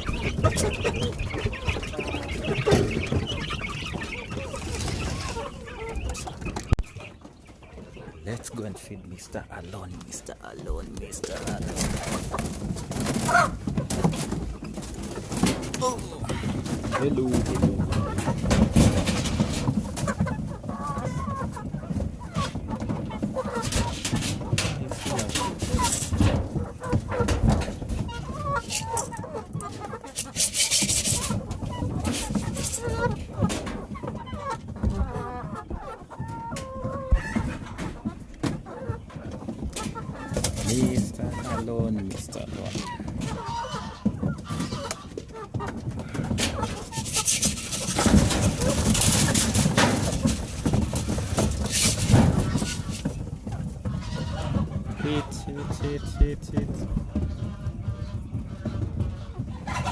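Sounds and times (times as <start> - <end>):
rustling: 0.0 - 6.9, 46.0 - 54.4
loud rustling and scuffling: 0.0 - 7.1, 9.8 - 59.9
chickens clucking: 0.0 - 59.9.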